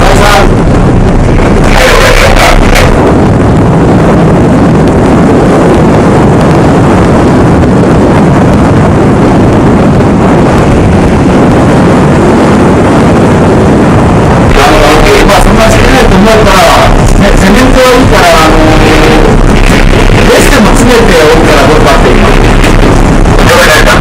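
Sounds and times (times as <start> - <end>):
ship rumbling: 0.0 - 24.0
wind buffeting microphone: 0.0 - 24.0.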